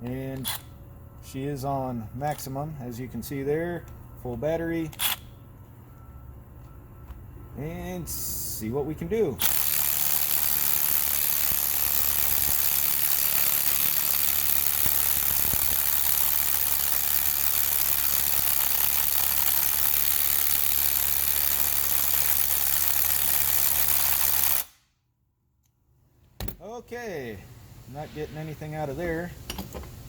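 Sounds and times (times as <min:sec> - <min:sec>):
impact wrench hammering: 0:09.4 - 0:24.8.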